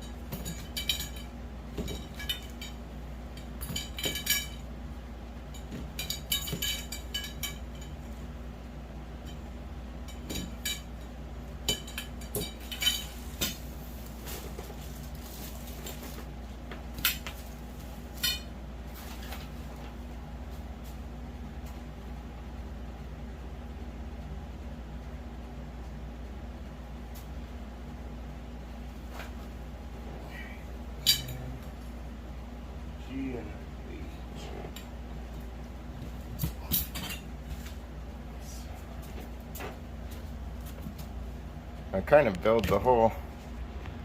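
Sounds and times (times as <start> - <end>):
metal poles clinking: 0.0 - 4.7, 5.5 - 8.1, 9.2 - 14.4, 18.1 - 18.5, 31.0 - 31.5, 36.4 - 37.3
steady low hum: 0.0 - 44.0
metal clanks: 5.5 - 8.0, 31.0 - 31.5.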